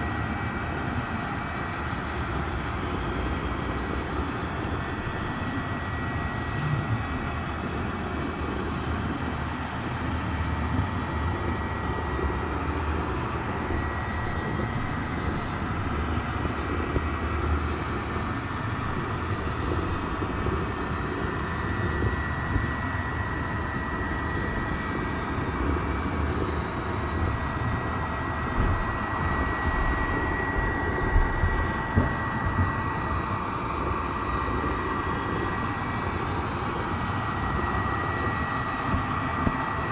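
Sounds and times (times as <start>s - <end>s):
high whine: 5.6s - 9.1s
train rumbling: 6.4s - 7.7s, 26.6s - 34.8s.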